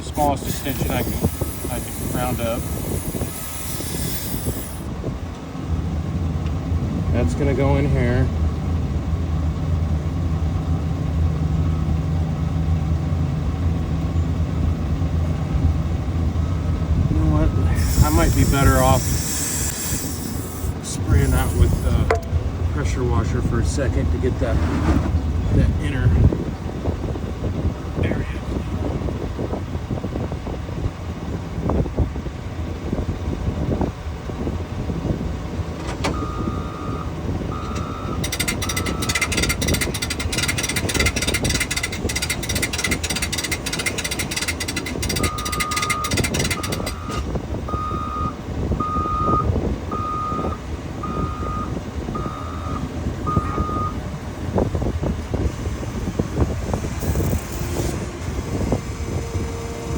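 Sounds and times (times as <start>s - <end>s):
loud rattling hiss: 0.0s - 4.9s, 17.6s - 22.2s
low machine noise: 0.0s - 49.1s, 52.2s - 59.9s
backup alarm beeping: 36.1s - 38.2s, 45.2s - 54.0s.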